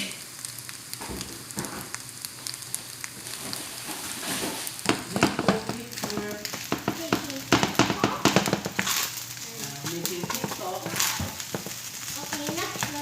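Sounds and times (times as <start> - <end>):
rice sizzling in a hot pan: 0.0 - 13.0
knocks on pan: 4.8 - 8.9, 10.2 - 13.0.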